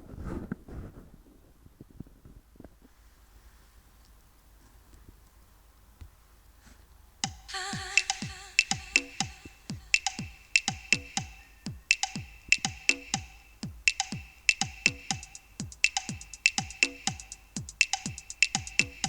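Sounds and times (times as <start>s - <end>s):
electronic dance music: 7.2s - 19.0s.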